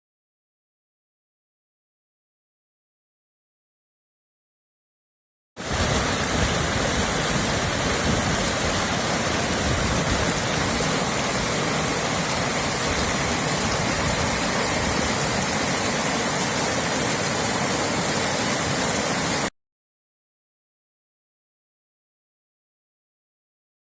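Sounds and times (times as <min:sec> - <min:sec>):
stream water rushing: 0:05.6 - 0:19.5.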